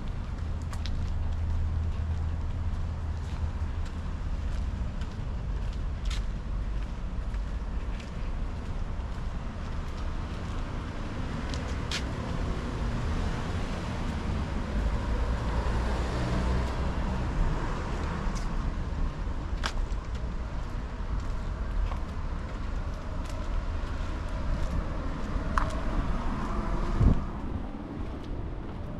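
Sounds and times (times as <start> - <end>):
steady low rumble: 0.0 - 15.6, 16.7 - 28.9
car passing: 10.7 - 19.5, 20.3 - 28.9.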